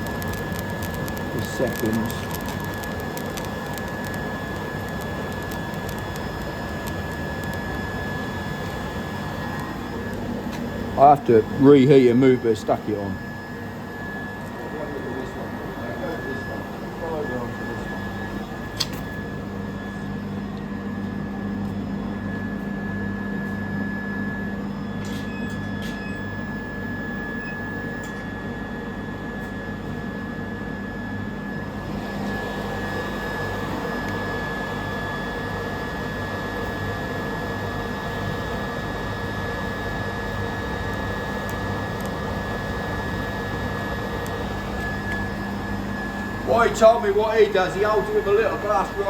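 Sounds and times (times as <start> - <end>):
induction heater humming and whining: 0.0 - 49.0
sharp click: 18.8 - 19.0.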